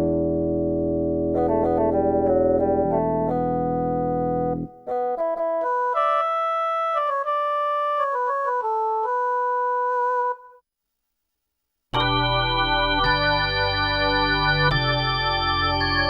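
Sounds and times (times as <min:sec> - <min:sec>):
synthesizer keyboard phrase: 0:01.4 - 0:10.5.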